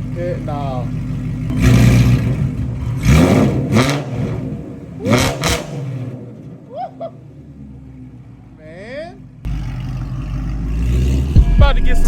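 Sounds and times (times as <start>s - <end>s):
loud engine idle: 0.0s - 3.0s
car engine revving: 0.4s - 8.6s, 9.2s - 12.0s.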